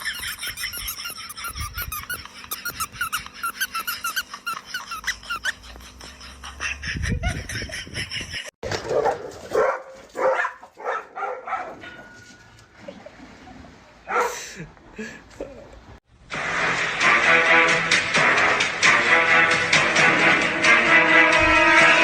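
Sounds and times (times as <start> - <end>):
rapid high squeaks: 0.0 - 5.7
dog barking and yelping: 0.0 - 6.0, 8.8 - 12.0, 14.1 - 14.4.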